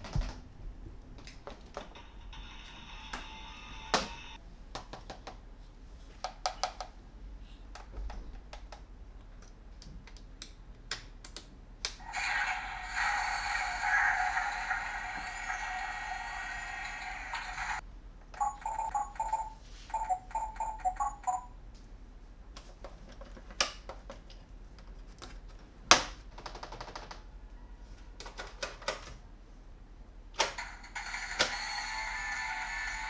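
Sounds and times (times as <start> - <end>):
short electronic beeps: 18.4 - 21.5.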